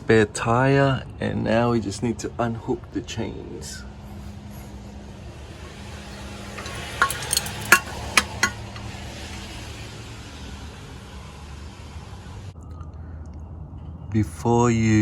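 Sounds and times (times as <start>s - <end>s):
sharp metallic clinks of chain: 5.7s - 8.8s.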